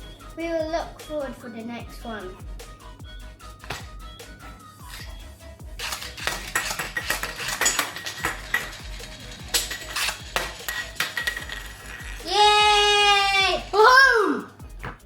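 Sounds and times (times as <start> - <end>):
clatter of small hard objects: 5.8 - 12.4.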